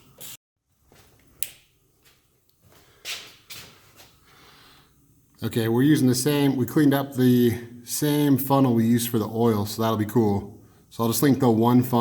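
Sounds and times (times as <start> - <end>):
scuffing rustles: 2.0 - 4.2.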